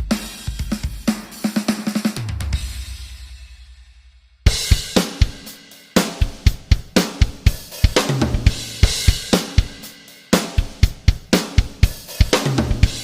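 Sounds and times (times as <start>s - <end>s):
drum kit beat: 0.0s - 13.0s
bass line: 8.1s - 9.0s.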